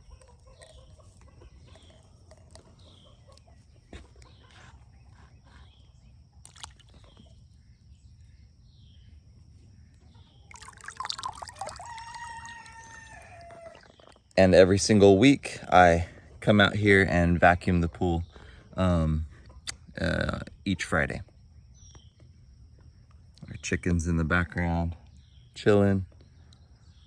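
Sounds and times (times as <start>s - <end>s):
rooster crowing: 11.5s - 13.9s.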